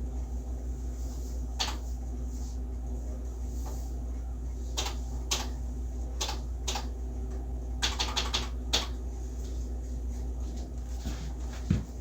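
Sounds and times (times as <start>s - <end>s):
steady low hum: 0.0s - 12.0s
electronic typewriter striking keys: 7.8s - 8.9s.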